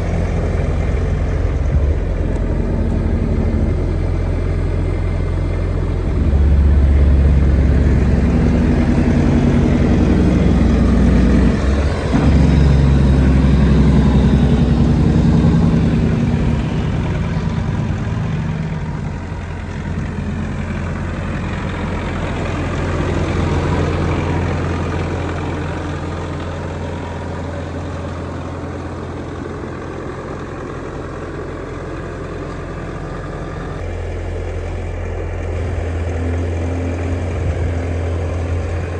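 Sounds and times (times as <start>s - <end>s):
diesel engine running: 0.0s - 38.9s.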